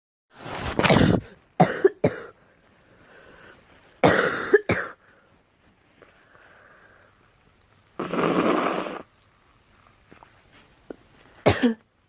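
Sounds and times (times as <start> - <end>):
girl coughing: 0.8 - 2.4, 4.0 - 5.0, 11.4 - 11.8.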